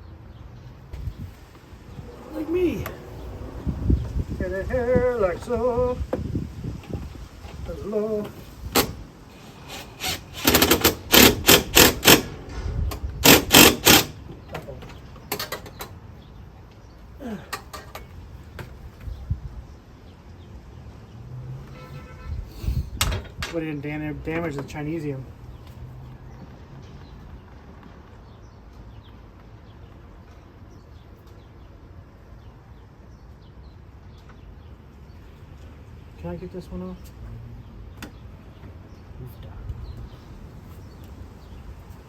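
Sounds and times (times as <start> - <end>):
small birds chirping: 0.0 - 10.8, 14.3 - 21.2, 23.6 - 42.0
steady low rumble: 0.9 - 7.9.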